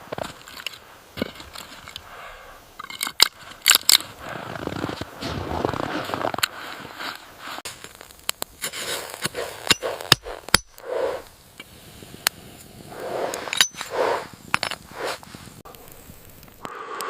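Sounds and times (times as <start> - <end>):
crunching or scraping: 0.0 - 16.7
sharp clicks and clinks: 13.4 - 13.9.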